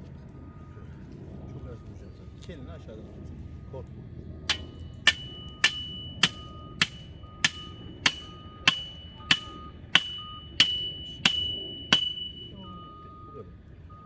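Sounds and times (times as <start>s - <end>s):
hammer striking iron post: 4.5s - 12.6s.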